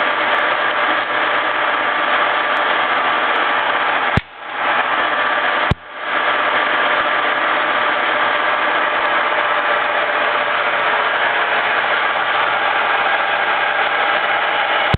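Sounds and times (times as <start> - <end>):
lathe running hum: 0.0 - 14.9
sharp click: 4.2 - 4.4.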